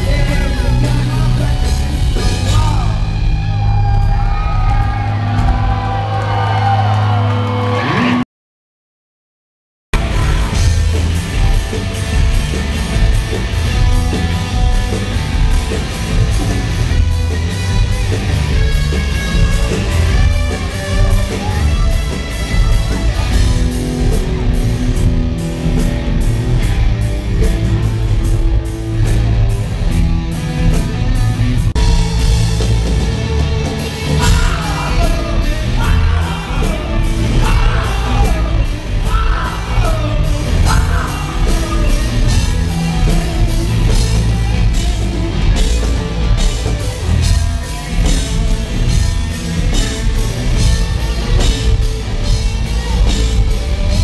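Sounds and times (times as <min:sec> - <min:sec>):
rock band playing live: 0:00.0 - 0:08.2, 0:10.0 - 0:54.0
person singing and yelling: 0:34.0 - 0:45.2.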